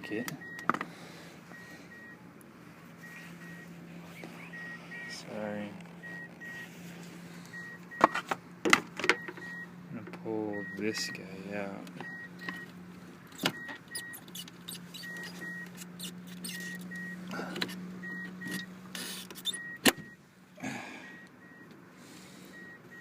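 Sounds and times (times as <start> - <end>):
steady low hum: 0.1 - 13.4.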